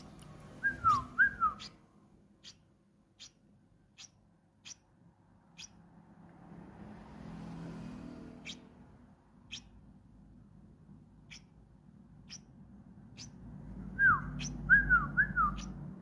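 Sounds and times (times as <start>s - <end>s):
bird peeping calls: 0.0s - 4.9s, 5.5s - 5.8s, 8.4s - 8.7s, 9.4s - 9.8s, 11.2s - 11.6s, 12.2s - 15.9s.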